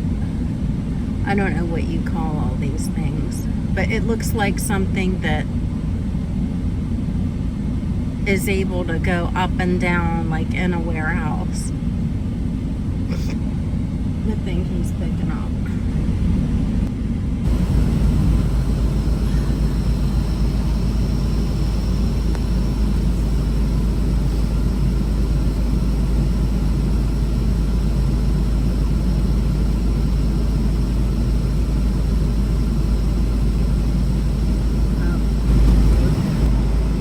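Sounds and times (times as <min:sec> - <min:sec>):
air conditioning running: 0:00.0 - 0:37.0
truck diesel engine idling: 0:17.4 - 0:37.0.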